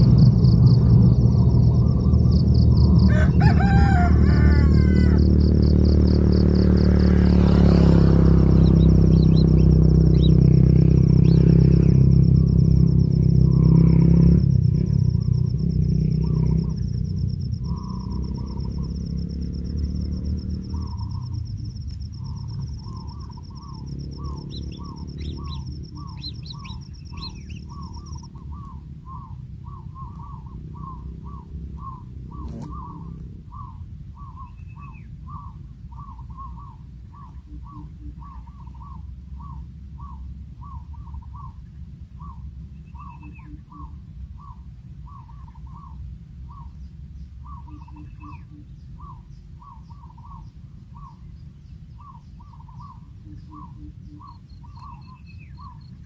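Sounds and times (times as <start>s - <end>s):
bird calling: 0.0s - 56.0s
low engine rumble: 0.0s - 56.0s
rooster crowing: 2.8s - 5.9s.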